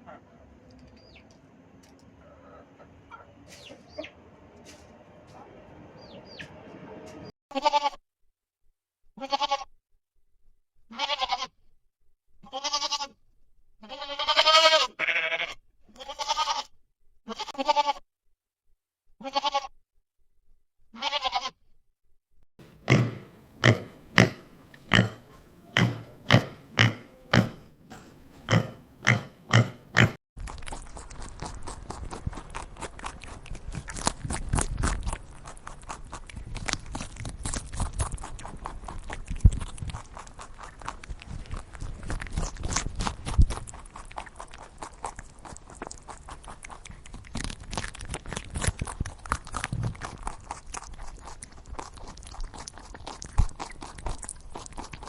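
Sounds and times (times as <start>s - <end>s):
livestock bleating: 7.5s - 8.0s, 9.2s - 9.7s, 10.9s - 11.5s, 12.4s - 13.2s, 13.8s - 16.7s, 17.3s - 18.0s, 19.2s - 19.7s, 21.0s - 21.6s.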